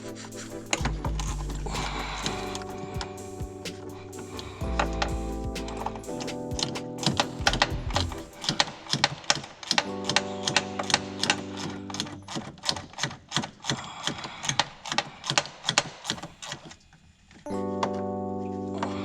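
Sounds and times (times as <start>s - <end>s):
rapid even ticking: 0.0s - 9.4s
background music sustained tones: 0.0s - 12.6s, 17.5s - 19.0s.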